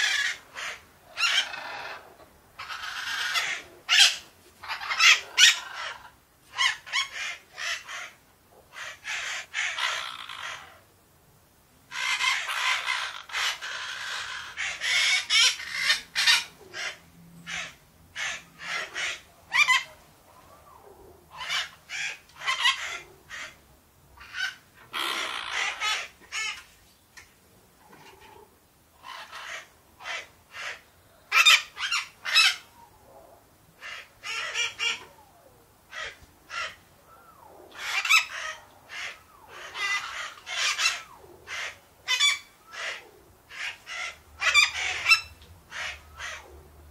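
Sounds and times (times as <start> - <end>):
parakeets squawking: 0.0 - 8.2, 8.8 - 10.8, 11.9 - 19.9, 21.3 - 23.6, 24.2 - 26.7, 29.0 - 32.7, 33.8 - 35.1, 35.9 - 36.8, 37.8 - 46.5.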